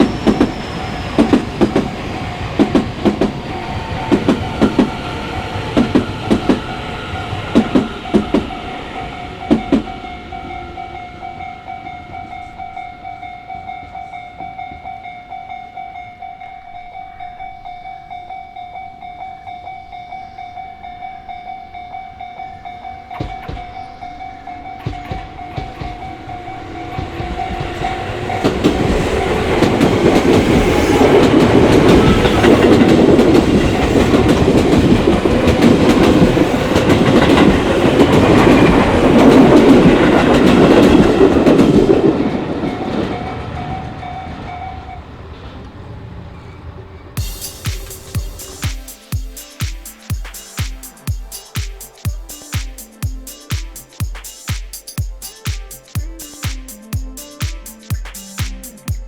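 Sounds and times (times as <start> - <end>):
train wheels clacking: 0.0 - 17.5, 18.2 - 45.9, 46.6 - 59.0
level-crossing warning alarm: 0.0 - 45.9.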